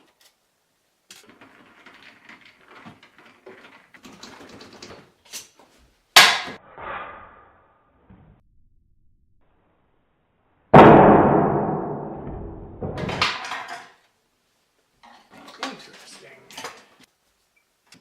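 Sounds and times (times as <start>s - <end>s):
sharp loud knock: 10.8s - 12.9s.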